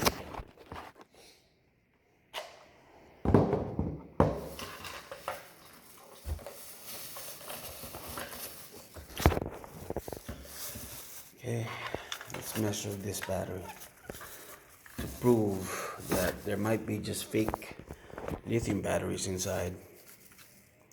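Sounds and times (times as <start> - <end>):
rustling clatter: 4.4 - 11.3.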